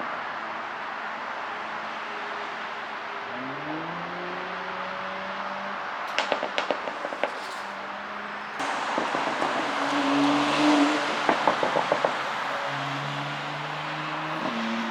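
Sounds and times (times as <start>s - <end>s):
exhaust crackling pops: 6.1s - 7.7s, 8.6s - 12.6s
car exhaust revving: 8.6s - 14.9s.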